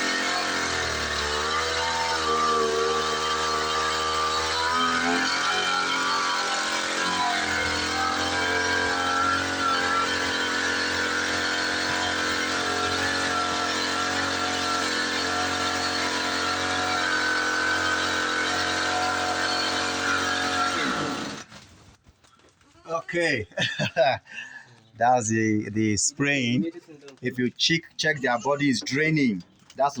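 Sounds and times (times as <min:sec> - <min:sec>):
small engine running: 0:00.0 - 0:21.6.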